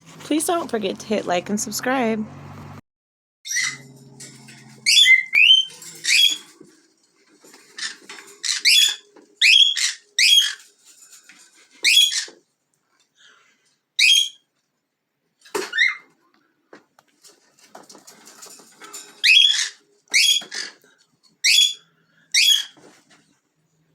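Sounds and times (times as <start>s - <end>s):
parrots chirping: 3.5s - 12.4s, 14.0s - 14.5s, 18.2s - 20.8s, 21.4s - 22.8s.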